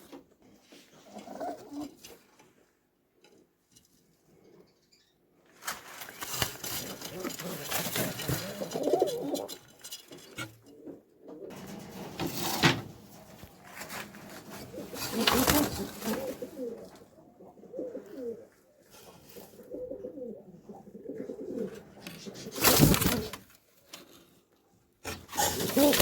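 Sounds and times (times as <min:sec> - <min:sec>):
pigeons cooing: 0:06.6 - 0:09.6, 0:14.0 - 0:23.4, 0:25.3 - 0:26.0.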